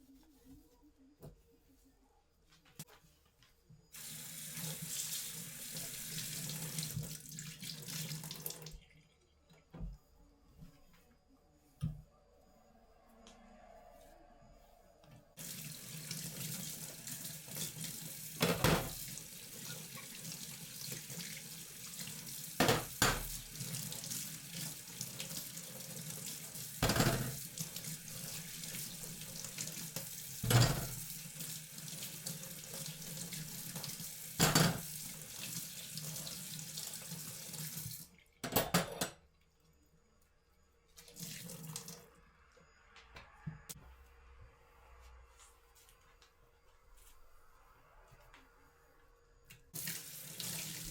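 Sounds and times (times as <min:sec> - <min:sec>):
tap running into sink: 0:18.4 - 0:19.1, 0:22.6 - 0:23.4.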